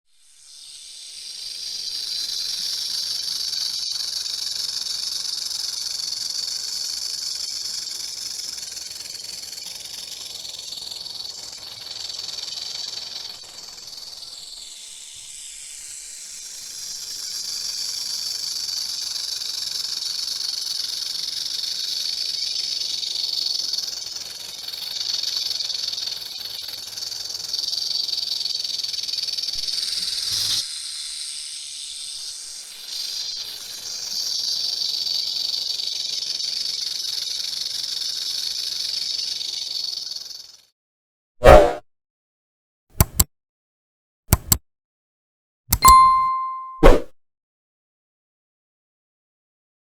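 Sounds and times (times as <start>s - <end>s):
rattlesnake tail rattle buzz: 0.1s - 40.7s.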